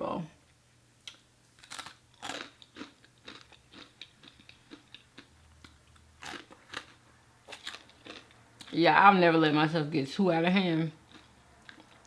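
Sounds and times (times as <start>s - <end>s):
person chewing food: 1.0s - 8.8s, 11.0s - 12.0s.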